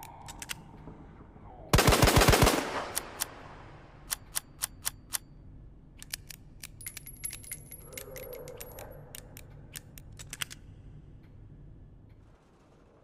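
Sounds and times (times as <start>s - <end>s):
revolver metallic clicks: 0.0s - 0.8s, 2.8s - 3.4s, 4.0s - 5.4s, 6.0s - 11.4s.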